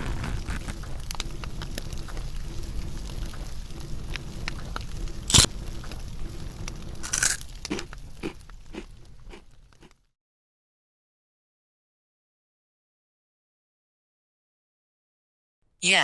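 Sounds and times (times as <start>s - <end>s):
small crackling clicks: 0.1s - 10.0s
crunchy biting and chewing: 7.0s - 10.0s.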